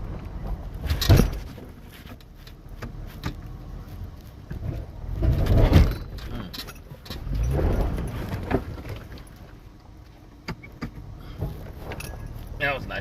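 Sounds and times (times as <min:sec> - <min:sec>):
vehicle body rattles and clunks: 0:00.0 - 0:13.0
engine pulling under load: 0:04.6 - 0:09.7.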